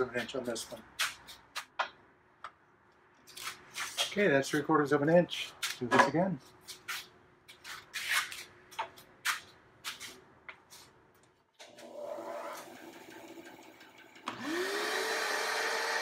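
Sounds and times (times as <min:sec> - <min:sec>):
bandsaw motor whine: 0:11.6 - 0:16.0.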